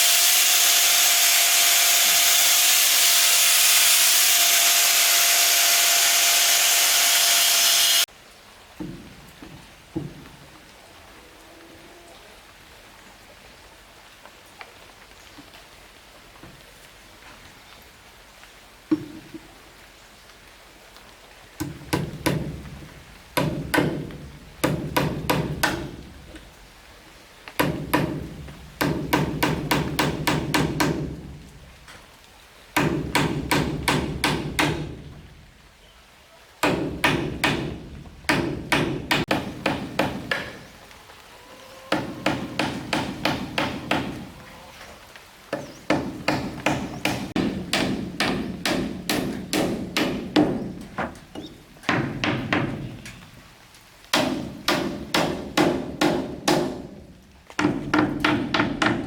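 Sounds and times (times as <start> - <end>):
hammering on wood: 21.6 - 22.7, 23.4 - 26.0, 27.6 - 31.2, 32.8 - 35.0, 36.6 - 40.7, 41.9 - 44.3, 45.5 - 51.2, 51.8 - 52.9, 54.1 - 57.0, 57.6 - 59.0.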